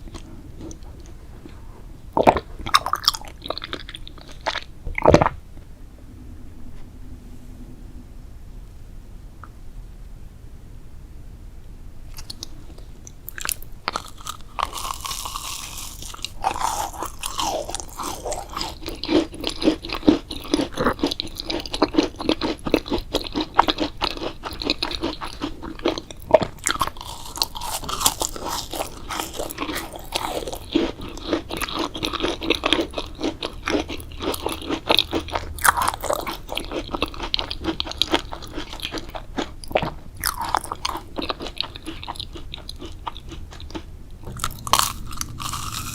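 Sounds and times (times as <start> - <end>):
chewing crunchy food: 0.0 - 5.4, 12.1 - 45.9.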